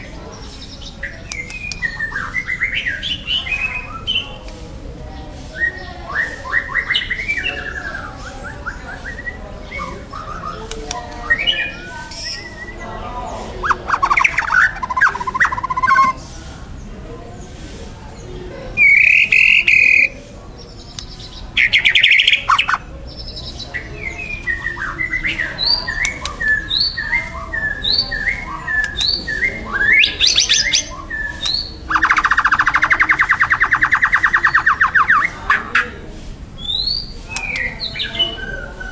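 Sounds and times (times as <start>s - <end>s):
bird singing whistled phrases: 5.6s - 10.6s, 11.2s - 12.8s, 13.6s - 16.2s, 18.8s - 20.1s, 23.4s - 35.4s.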